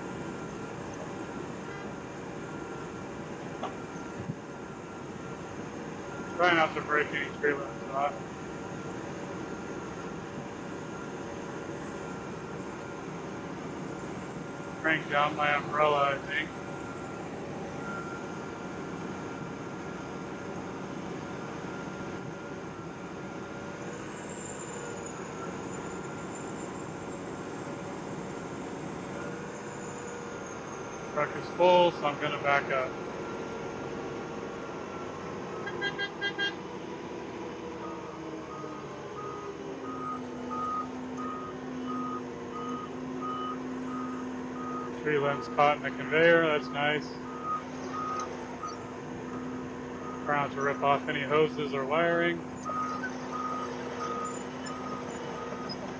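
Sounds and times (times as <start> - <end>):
diesel engine hum: 0.0 - 55.9
thin steady whine: 0.0 - 55.9
backup alarm beeping: 34.8 - 36.6, 37.8 - 51.1, 52.4 - 55.9.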